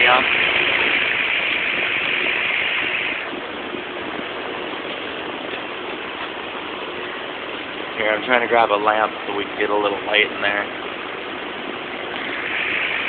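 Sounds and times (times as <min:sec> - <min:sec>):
electric fan running: 0:00.0 - 0:13.0.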